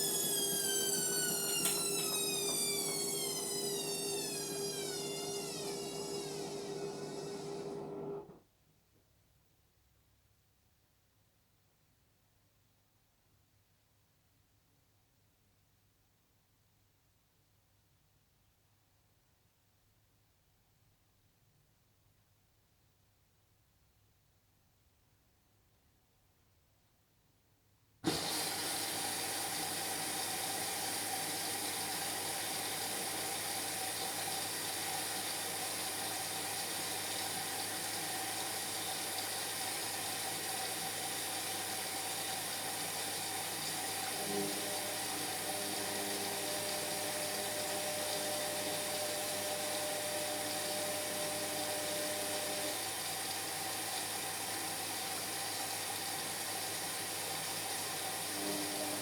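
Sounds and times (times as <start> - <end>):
inlet valve opening: 0.0 - 8.2
water rushing into washing machine: 0.0 - 8.3, 28.1 - 59.0.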